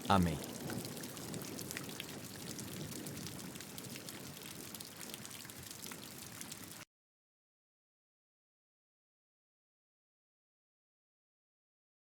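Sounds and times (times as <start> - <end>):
rain pattering: 0.0 - 6.9.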